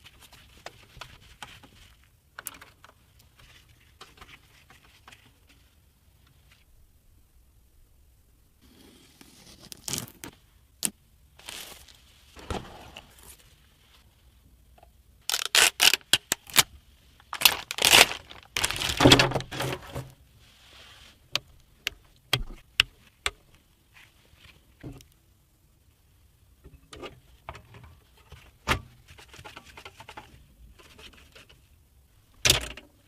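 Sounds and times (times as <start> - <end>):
packaging tearing and crinkling: 9.3 - 10.3, 15.2 - 16.7, 17.3 - 19.6.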